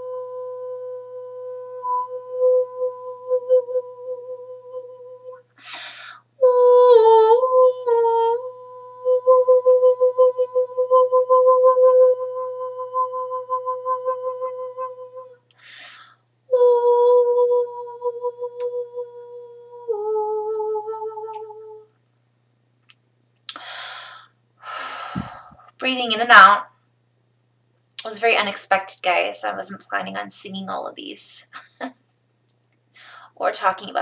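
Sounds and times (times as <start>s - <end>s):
woman humming long notes: 0.0s - 21.9s
woman breathing in: 5.6s - 6.2s, 15.6s - 16.2s, 23.5s - 25.7s, 33.0s - 33.4s.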